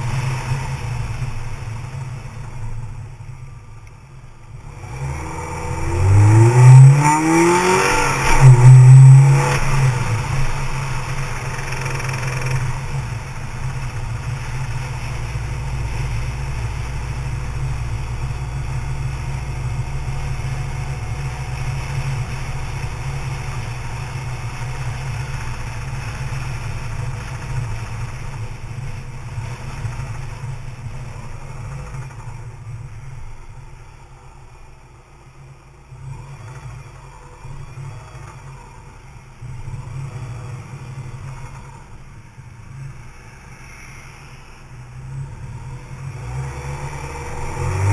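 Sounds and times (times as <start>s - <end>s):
car engine idling: 0.0s - 47.9s
car engine revving: 0.0s - 47.9s.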